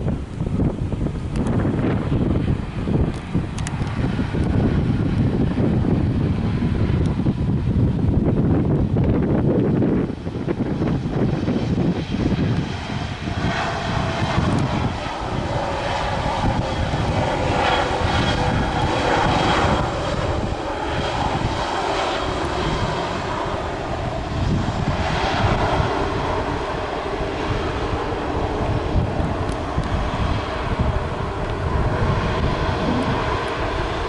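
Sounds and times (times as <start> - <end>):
airliner engines passing: 0.0 - 34.0
wind buffeting microphone: 0.0 - 34.0.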